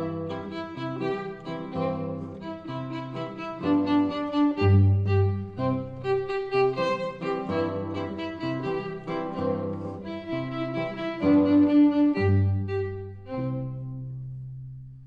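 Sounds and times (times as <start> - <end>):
violin melody: 0.0 - 14.7
low held cello notes: 0.0 - 15.0.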